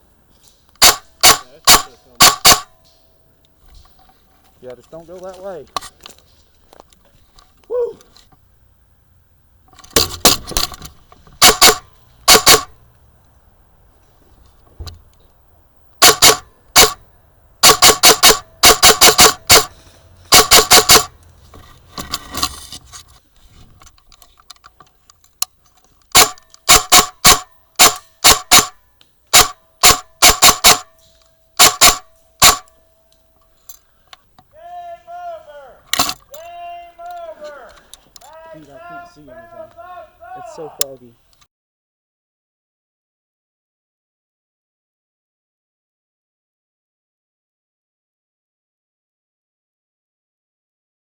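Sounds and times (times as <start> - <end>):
airsoft gun shots: 0.8 - 2.8, 11.4 - 12.8, 16.0 - 17.0, 17.6 - 21.2, 26.1 - 32.8.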